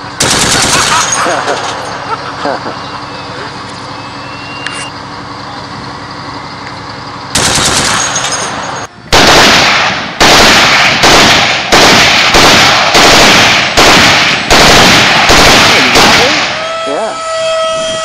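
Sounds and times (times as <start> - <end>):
machine-gun bursts: 0.2 - 1.7, 7.4 - 16.6.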